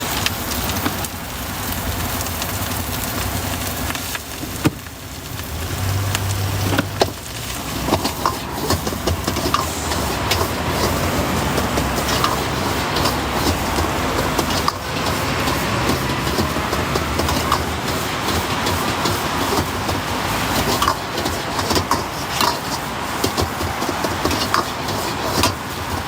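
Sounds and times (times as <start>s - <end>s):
street noise: 0.0s - 26.0s
clicks and clatters: 1.8s - 26.0s.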